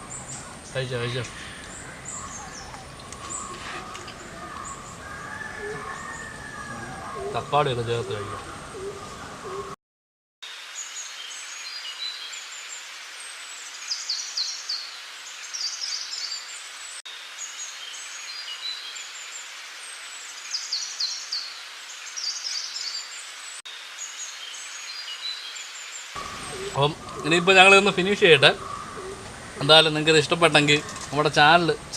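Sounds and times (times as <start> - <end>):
small birds chirping: 0.0 - 9.7, 10.8 - 31.9
steady hiss: 10.4 - 31.9.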